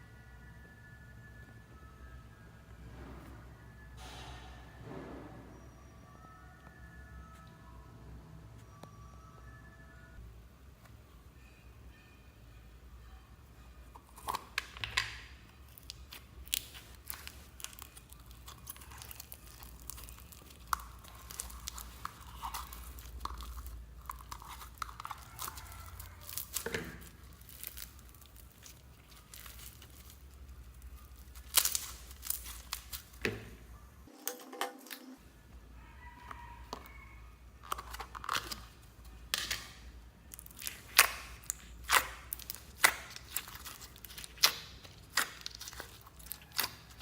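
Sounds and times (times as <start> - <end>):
slime squishing with sticky pops: 14.0 - 33.5, 37.6 - 47.0.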